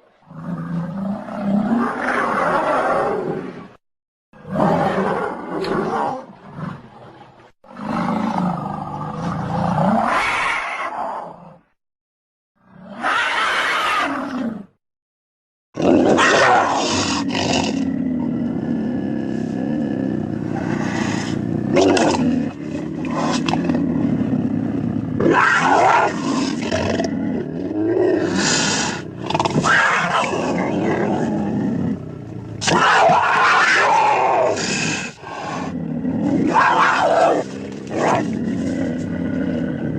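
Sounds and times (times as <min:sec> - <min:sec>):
dinosaur roars and growls: 0:00.2 - 0:03.8, 0:04.4 - 0:11.8, 0:12.6 - 0:14.8, 0:15.8 - 0:39.9.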